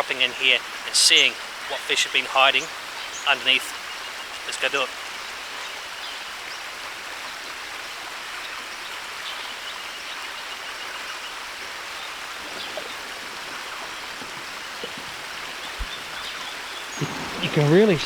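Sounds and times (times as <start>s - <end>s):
river water rushing: 0.0s - 18.0s
faint ticks: 12.4s - 18.0s.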